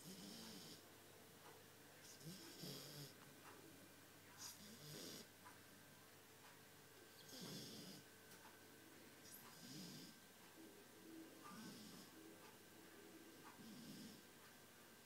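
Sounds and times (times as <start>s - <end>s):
puppy snoring: 0.0s - 0.8s, 2.0s - 3.2s, 4.4s - 5.3s, 7.2s - 8.1s, 9.2s - 10.2s, 11.4s - 12.2s, 13.3s - 14.3s.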